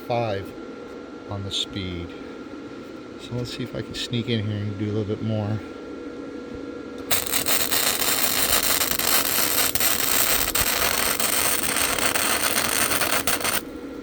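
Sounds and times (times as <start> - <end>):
cooling fan hum: 0.0 - 14.0
welder arc crackling: 7.1 - 13.7.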